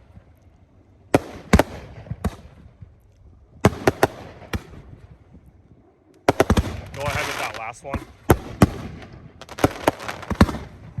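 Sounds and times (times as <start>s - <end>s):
firework shells bursting: 6.1s - 11.0s.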